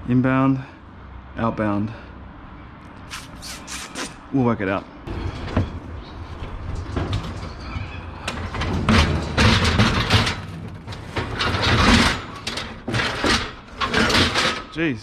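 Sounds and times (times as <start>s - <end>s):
heavy object scraping and rattling: 5.1s - 14.7s.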